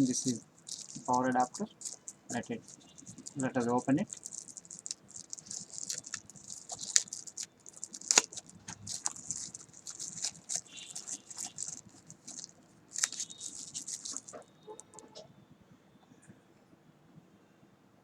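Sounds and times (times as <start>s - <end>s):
packaging rustling and crinkling: 0.0s - 14.5s
sharp clicks of packaging: 0.0s - 14.9s.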